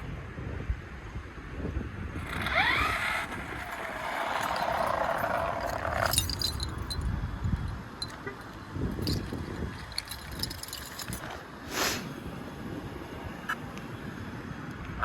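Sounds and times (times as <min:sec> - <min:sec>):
electric rc car motor whine: 0:02.2 - 0:05.9.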